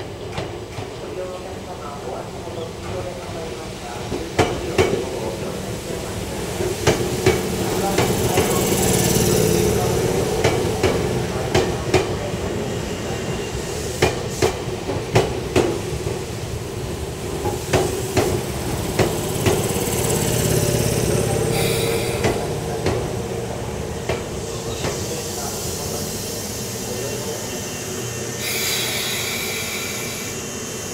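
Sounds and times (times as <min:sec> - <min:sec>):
train running hum: 0:00.0 - 0:30.9
train wheels clacking over rail joints: 0:06.6 - 0:12.2, 0:17.4 - 0:23.2
short hiss: 0:28.4 - 0:30.4.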